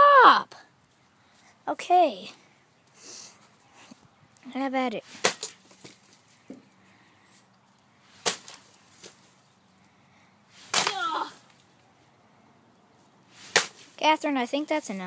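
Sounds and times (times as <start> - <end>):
broom whacking cactus: 4.8 - 6.1, 8.0 - 9.3, 10.5 - 11.6, 13.3 - 14.0
person exclaiming: 10.8 - 11.4.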